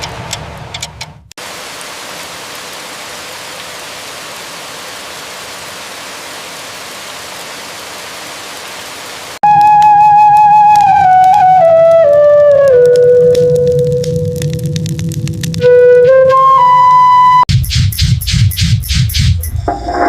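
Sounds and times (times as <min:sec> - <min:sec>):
rain hissing: 0:00.0 - 0:16.4
flute melody: 0:09.4 - 0:14.6, 0:15.5 - 0:17.5.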